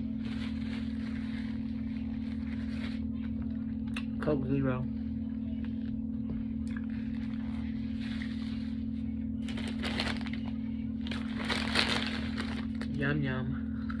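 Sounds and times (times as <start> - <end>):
crinkling crunching while eating: 0.0 - 4.1, 9.4 - 13.1.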